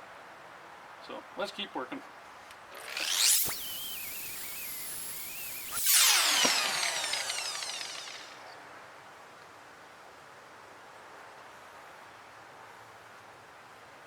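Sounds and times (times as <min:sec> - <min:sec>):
loud falling whine: 0:02.8 - 0:08.5
grinder high grinding whine: 0:02.8 - 0:08.6.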